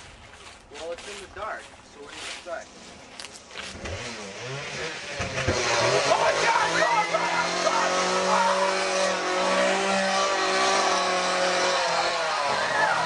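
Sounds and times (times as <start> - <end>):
chainsaw running at high speed: 3.6 - 13.0.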